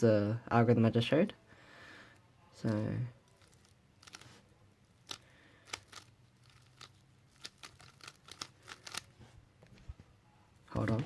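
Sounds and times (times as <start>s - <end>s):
plastic puzzle clicks: 5.0s - 9.1s.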